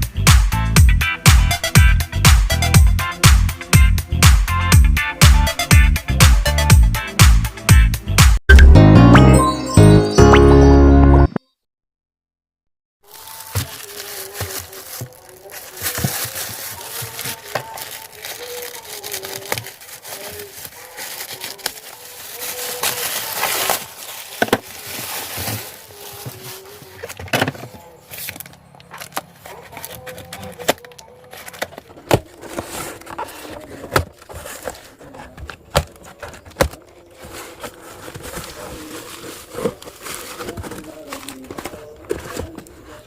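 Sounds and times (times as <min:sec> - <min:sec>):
packaging crinkling and rustling: 0:13.0 - 0:43.0.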